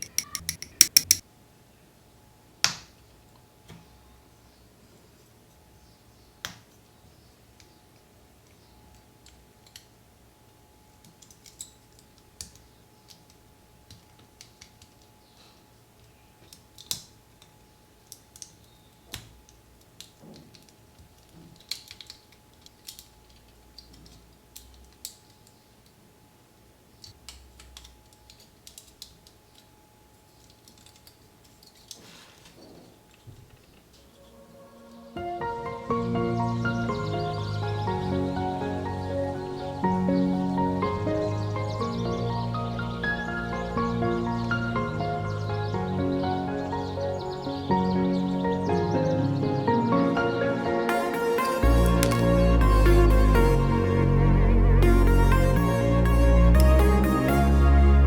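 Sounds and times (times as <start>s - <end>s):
plastic parts clicking together: 0.0s - 1.2s, 7.6s - 10.0s, 10.9s - 15.2s, 16.0s - 26.0s, 27.0s - 34.0s.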